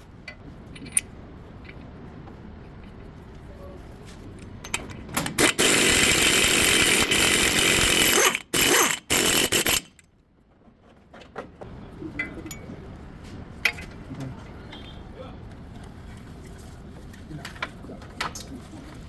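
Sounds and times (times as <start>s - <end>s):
power tool running: 5.4s - 10.0s.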